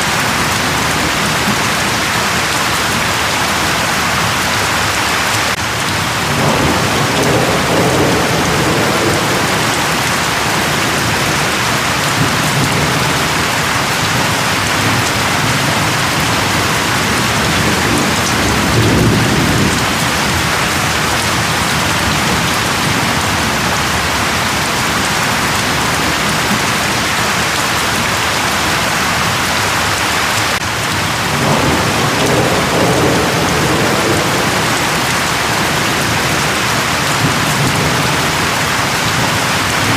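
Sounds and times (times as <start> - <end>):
rain hissing: 0.0 - 39.9
low thunder rumbling: 5.6 - 27.1, 30.6 - 39.9.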